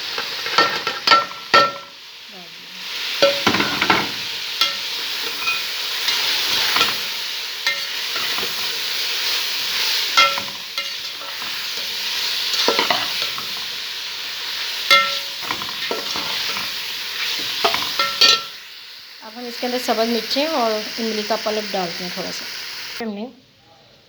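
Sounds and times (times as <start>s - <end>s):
onions frying in oil: 0.0s - 23.1s
metal spoon scraping pan: 0.1s - 1.9s, 3.0s - 18.6s.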